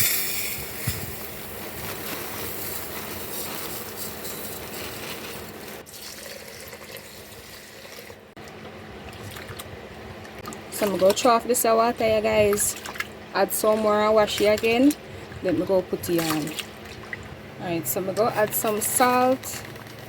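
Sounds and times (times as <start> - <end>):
tap water running into a pot: 5.8 - 8.2.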